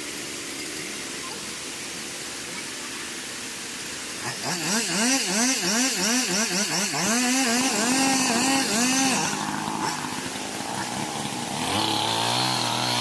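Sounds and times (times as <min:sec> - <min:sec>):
small engine revving: 0:04.1 - 0:13.0.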